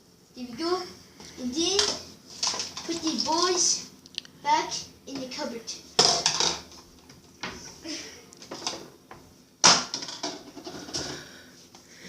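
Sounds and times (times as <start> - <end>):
toys knocking and rattling: 1.7 - 3.5, 6.0 - 6.8, 9.6 - 11.2.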